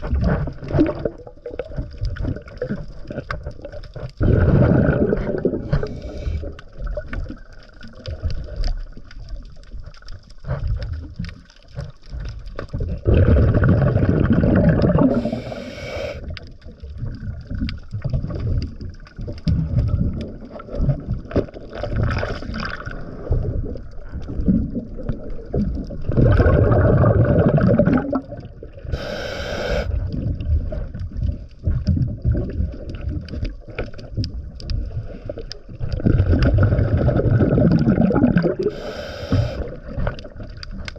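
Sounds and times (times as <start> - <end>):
underwater background: 0.0 - 40.9
hissing inhale: 5.6 - 6.6, 15.1 - 16.3, 28.9 - 30.0, 38.6 - 39.8.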